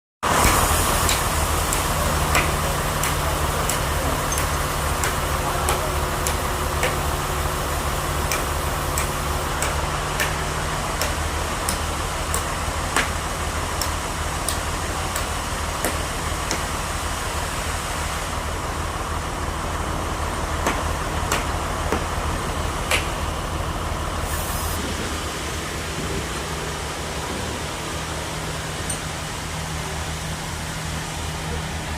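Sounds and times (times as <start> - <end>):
sawmill machinery running: 0.2 - 31.9
sharp clicks and knocks: 8.2 - 10.4.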